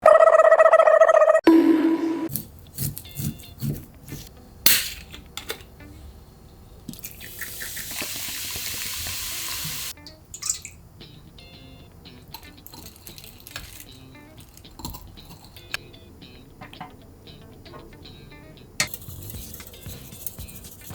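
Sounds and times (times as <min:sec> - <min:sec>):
dishes and utensils clinking: 0:04.7 - 0:05.9, 0:12.4 - 0:15.8, 0:18.8 - 0:20.9
kitchen tap running: 0:06.9 - 0:10.8.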